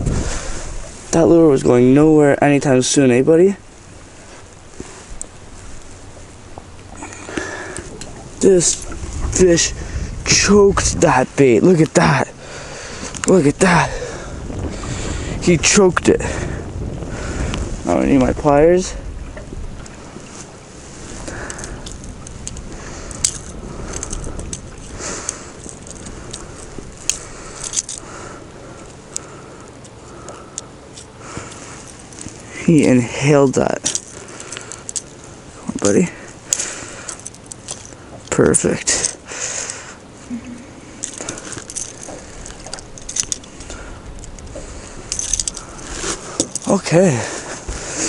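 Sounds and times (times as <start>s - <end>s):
low rumble: 0.0s - 1.7s, 3.6s - 11.7s, 12.3s - 29.0s
light clicks and clinks: 6.6s - 9.6s, 13.0s - 14.1s, 21.2s - 48.0s
handling rustling: 30.6s - 39.8s, 40.4s - 48.0s
rustling: 39.0s - 48.0s.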